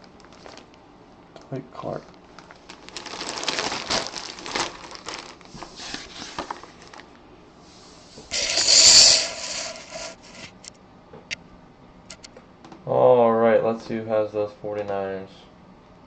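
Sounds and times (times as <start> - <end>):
plastic packaging crinkling: 0.0 - 0.8, 2.3 - 7.2.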